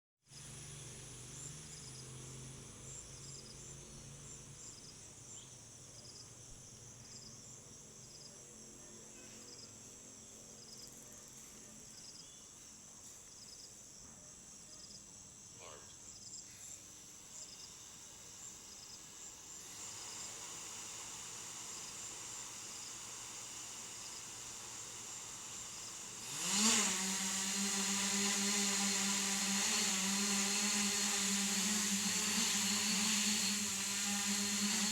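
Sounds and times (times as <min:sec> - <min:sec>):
crickets chirping: 0:00.3 - 0:34.9
drone motors whirring: 0:16.5 - 0:34.9.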